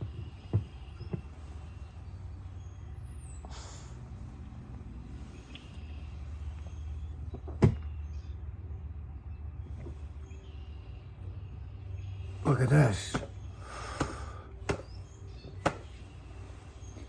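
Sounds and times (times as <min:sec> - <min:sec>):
car interior rumble: 0:00.0 - 0:17.0.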